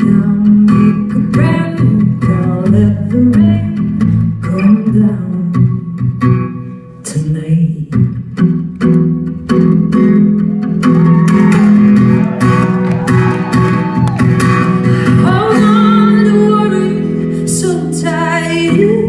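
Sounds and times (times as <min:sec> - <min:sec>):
strummed guitar chords: 0:00.0 - 0:19.0.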